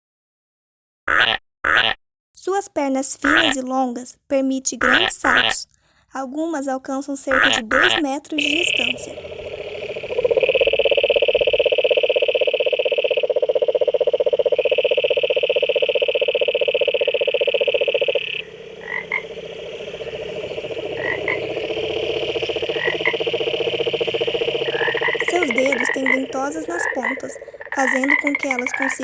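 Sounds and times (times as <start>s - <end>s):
tree frogs trilling: 1.1s - 2.0s, 3.2s - 3.6s, 4.8s - 5.7s, 7.2s - 29.0s
short frog chirps: 7.3s - 29.0s.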